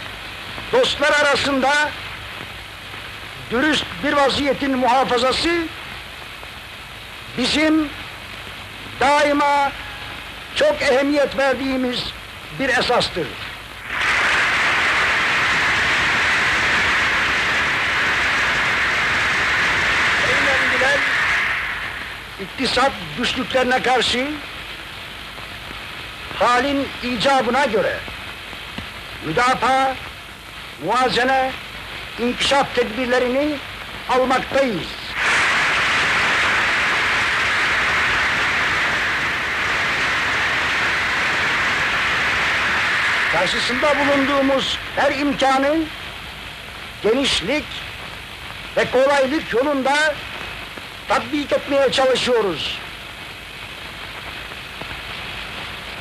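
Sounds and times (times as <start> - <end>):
old recording hiss: 0.0 - 56.0
people applauding: 13.9 - 22.0.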